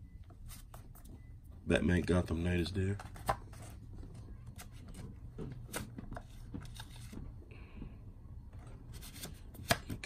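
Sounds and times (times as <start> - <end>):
book pages turning: 2.9 - 7.3, 8.6 - 10.0.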